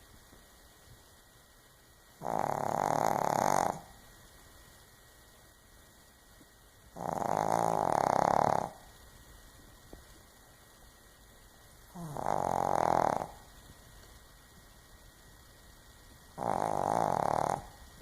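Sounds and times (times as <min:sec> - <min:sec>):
snoring: 0:02.2 - 0:03.9, 0:07.0 - 0:08.8, 0:11.9 - 0:13.5, 0:16.4 - 0:17.8.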